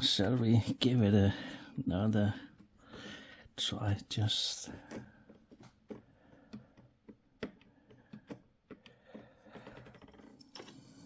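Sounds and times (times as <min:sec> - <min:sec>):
screwdriver clicks and taps: 0:04.9 - 0:09.2.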